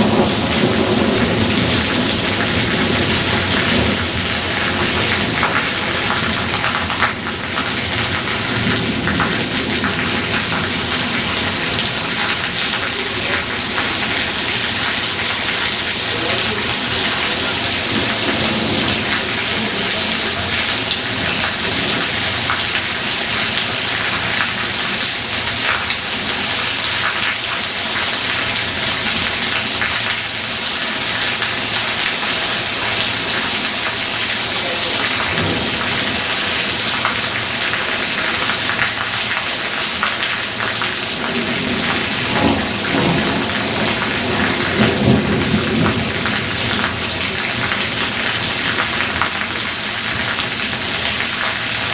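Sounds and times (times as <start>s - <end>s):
thunder rumbling: 0.0s - 25.0s, 34.6s - 39.2s, 40.8s - 50.8s
heavy rain: 0.0s - 51.9s.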